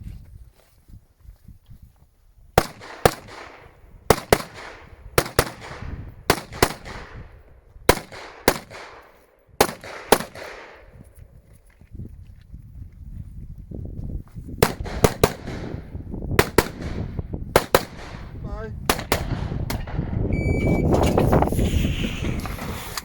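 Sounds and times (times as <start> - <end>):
rifle shots with echo: 2.6 - 11.0, 14.6 - 20.3.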